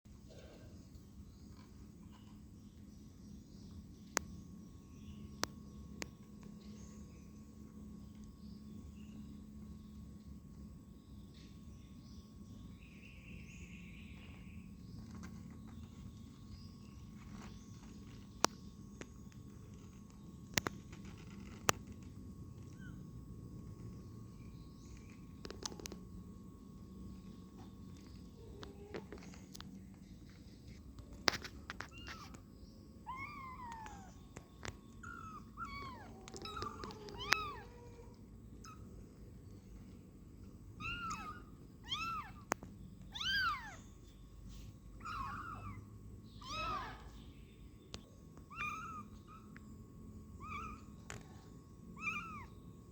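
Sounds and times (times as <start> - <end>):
low background hum: 0.1 - 52.9
kittens mewing: 35.0 - 38.9, 40.8 - 42.5, 43.2 - 43.8, 45.0 - 47.2, 48.5 - 49.6, 50.4 - 50.9, 52.0 - 52.5.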